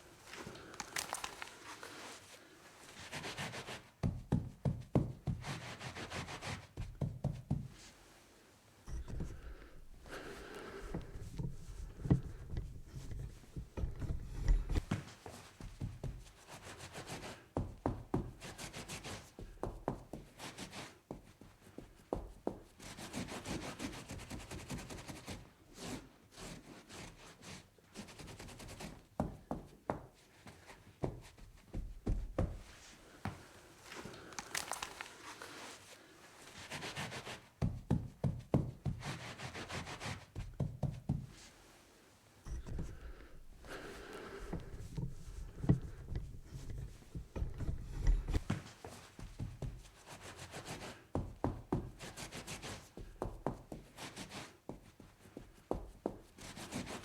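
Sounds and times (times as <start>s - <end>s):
small knocks and scrapes: 0.2s - 3.9s, 8.8s - 17.2s, 30.4s - 37.5s, 38.8s - 51.1s
rubbing a tabletop: 2.9s - 4.0s, 5.3s - 8.2s, 9.0s - 17.7s, 20.2s - 29.1s, 30.2s - 38.0s, 38.8s - 53.1s, 53.7s - 57.0s.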